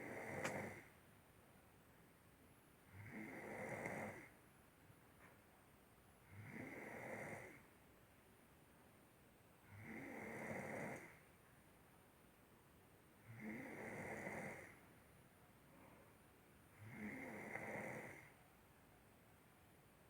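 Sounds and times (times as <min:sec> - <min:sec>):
quiet snoring: 0:00.0 - 0:00.9, 0:02.9 - 0:04.4, 0:06.2 - 0:07.7, 0:09.6 - 0:11.3, 0:13.2 - 0:14.9, 0:16.7 - 0:18.4.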